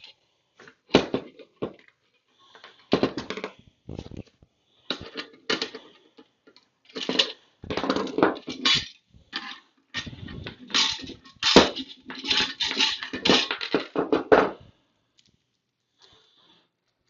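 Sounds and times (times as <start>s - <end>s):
metal parts rattling and clinking: 6.9s - 14.0s.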